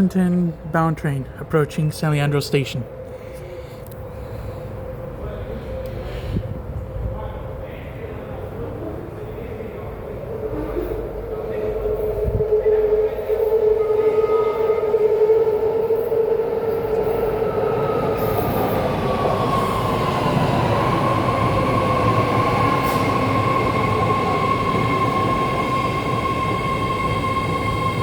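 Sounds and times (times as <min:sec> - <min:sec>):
train high whine: 0:00.0 - 0:28.0
train rumble: 0:00.0 - 0:28.0.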